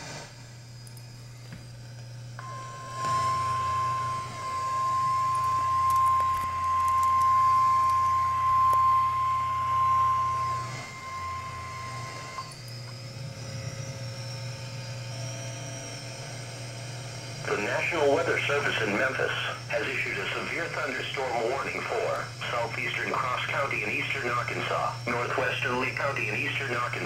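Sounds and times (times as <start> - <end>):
steady alarm tone: 0.8 - 27.0
low radio hum and hiss: 17.0 - 27.0.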